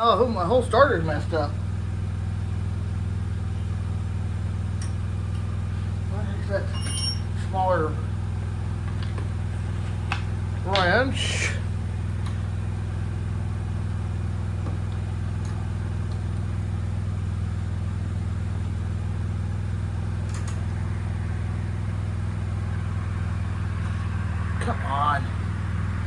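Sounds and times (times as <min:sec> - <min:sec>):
low mechanical hum: 0:00.0 - 0:26.0.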